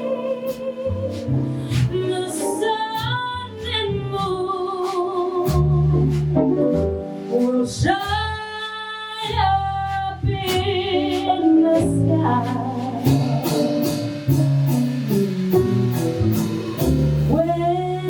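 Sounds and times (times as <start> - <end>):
jazz ensemble playing ballad: 0.0 - 18.0
cymbal strokes: 12.8 - 18.0.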